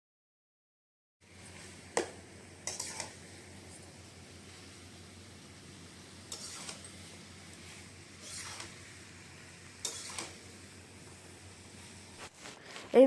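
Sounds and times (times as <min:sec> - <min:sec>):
soft rustling: 0:12.2 - 0:13.0.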